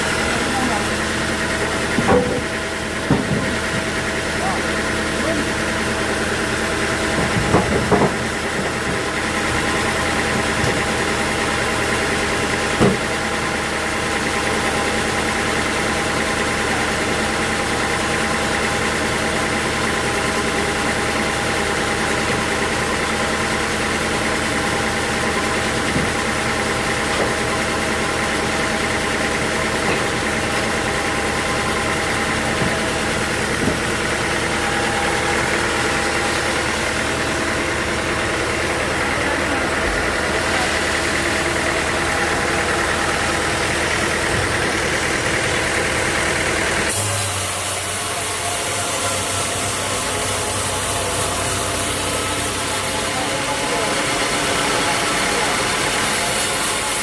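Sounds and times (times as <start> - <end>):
sawmill machinery humming: 0.0 - 57.0
sharp knocks: 1.9 - 3.9.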